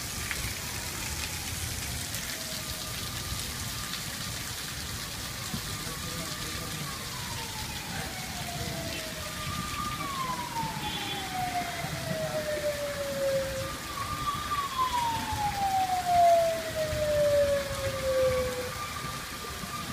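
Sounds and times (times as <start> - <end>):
steady rain: 0.0 - 19.9
siren wailing: 0.4 - 19.9.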